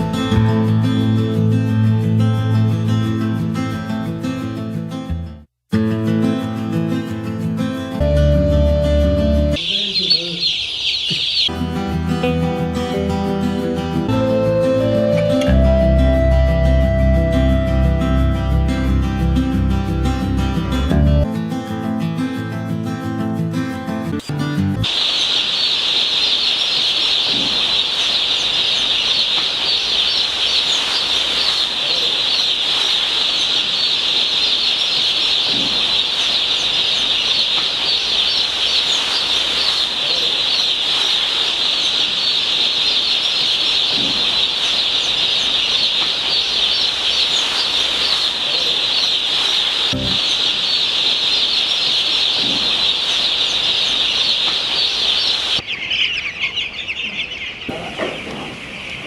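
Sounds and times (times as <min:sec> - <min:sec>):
many chicks peeping: 0:09.4 - 0:11.6, 0:24.8 - 0:59.0.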